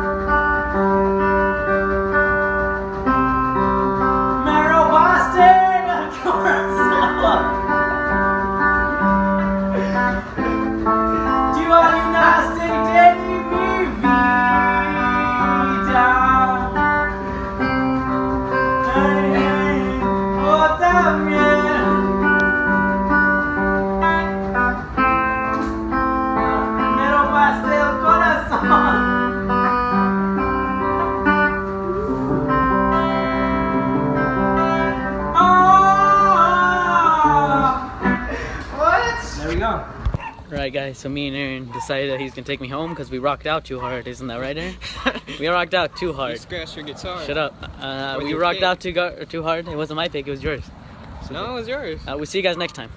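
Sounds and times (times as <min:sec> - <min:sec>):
guitar ringing notes: 0:00.0 - 0:39.6
person singing: 0:04.2 - 0:08.0, 0:09.6 - 0:23.3, 0:30.5 - 0:33.8, 0:34.5 - 0:38.6.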